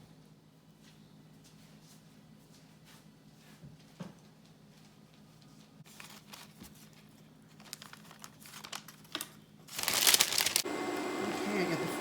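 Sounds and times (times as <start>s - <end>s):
plastic or paper crinkling: 5.9s - 10.7s.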